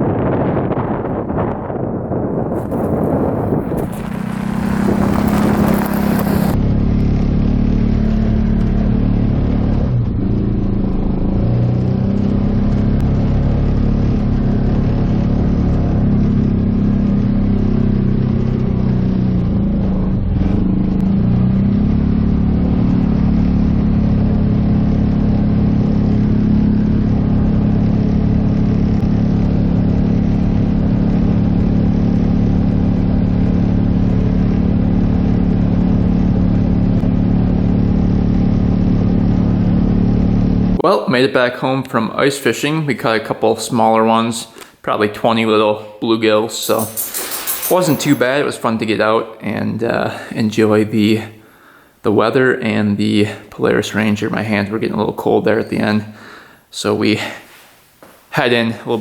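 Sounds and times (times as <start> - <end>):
wind noise hiss: 0.0 - 6.6
utility vehicle engine running: 2.5 - 40.8.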